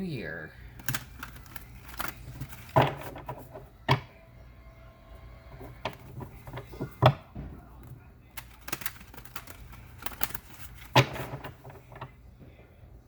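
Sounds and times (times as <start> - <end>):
cards being shuffled: 0.7 - 4.1, 5.5 - 7.2, 7.8 - 12.2
cards slapping: 0.7 - 4.1, 5.5 - 12.2.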